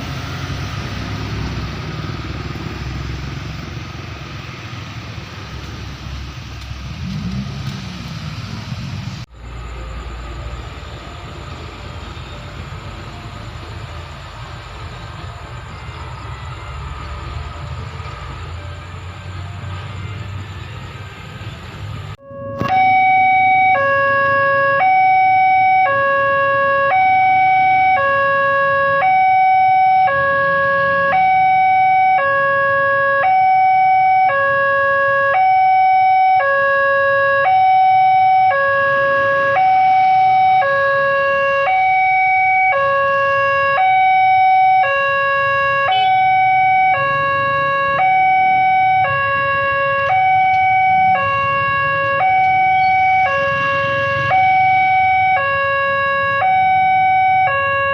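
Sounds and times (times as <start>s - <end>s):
two-tone level-crossing siren: 22.2s - 57.9s.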